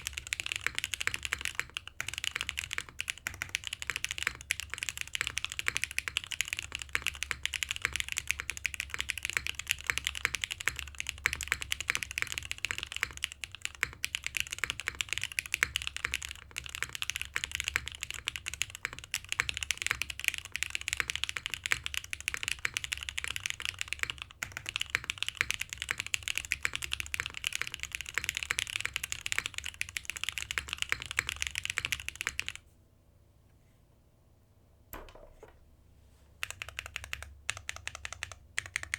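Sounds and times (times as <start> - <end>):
fast typing on mechanical keyboard: 0.0 - 32.6, 36.4 - 38.9.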